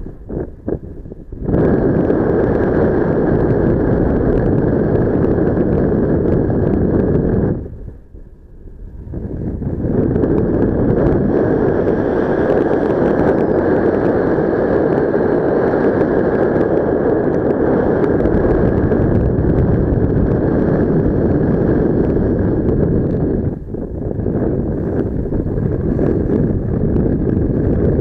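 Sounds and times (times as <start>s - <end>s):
wind buffeting the microphone: 0.0s - 28.0s.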